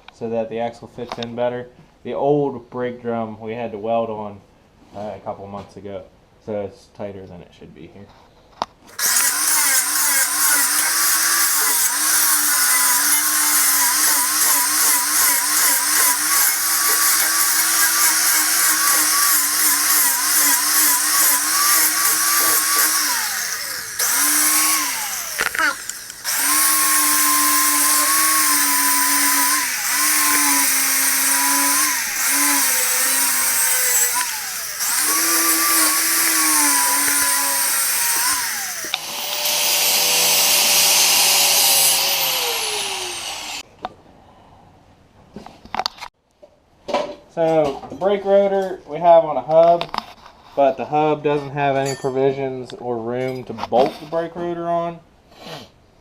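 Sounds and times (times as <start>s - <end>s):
power tool motor whining: 8.9s - 43.6s.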